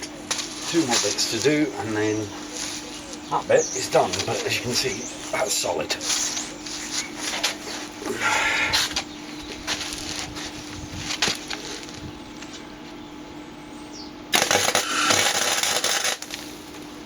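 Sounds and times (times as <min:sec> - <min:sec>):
steady hum: 0:00.0 - 0:17.0
welding arc crackling: 0:14.3 - 0:17.0.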